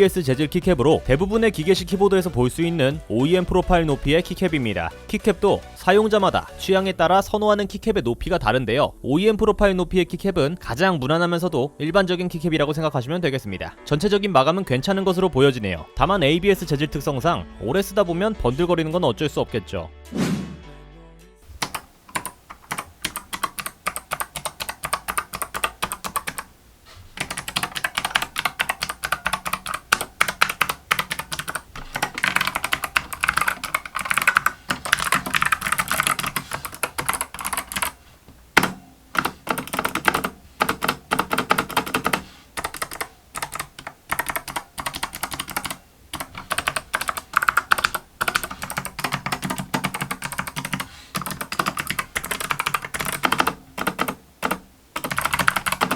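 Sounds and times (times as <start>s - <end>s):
clicky mechanical keyboard typing: 21.5s - 26.5s, 27.1s - 38.0s, 38.6s - 55.9s.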